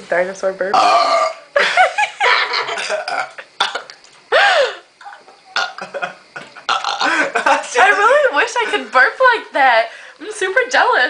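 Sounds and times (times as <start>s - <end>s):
person burping loudly: 0.7s - 1.6s, 2.2s - 4.0s, 5.0s - 7.6s.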